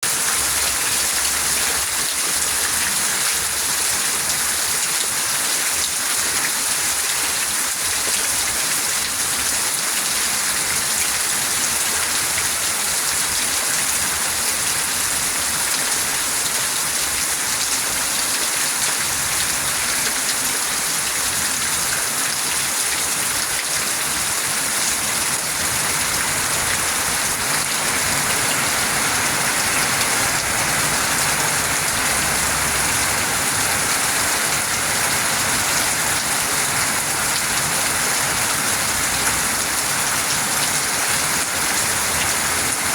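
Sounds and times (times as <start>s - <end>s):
heavy rain pattering: 0.1s - 42.9s.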